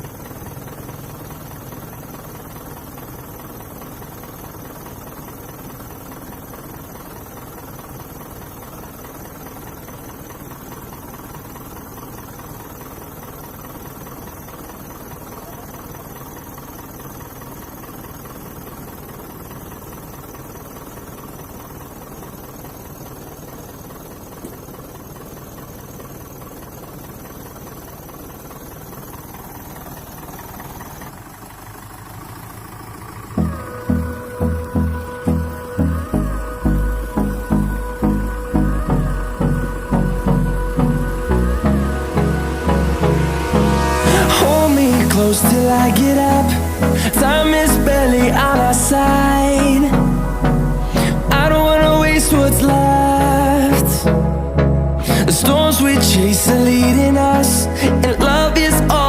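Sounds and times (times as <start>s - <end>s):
vehicle engine running: 0.0s - 59.0s.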